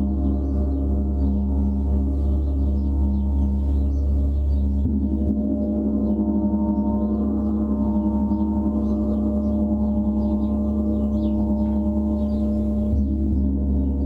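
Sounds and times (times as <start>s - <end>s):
gong roll: 0.0s - 14.0s.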